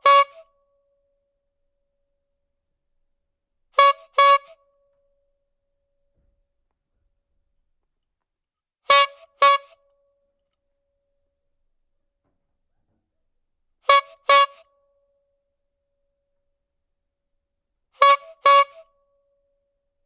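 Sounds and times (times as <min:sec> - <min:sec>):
rubber-bulb horn honking: 0:00.0 - 0:00.5, 0:03.8 - 0:04.6, 0:08.9 - 0:09.8, 0:13.8 - 0:14.7, 0:18.0 - 0:18.9.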